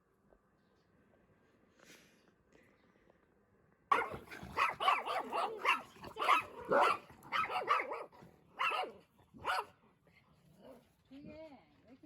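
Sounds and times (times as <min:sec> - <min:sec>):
dog barking excitedly: 0:03.9 - 0:09.8.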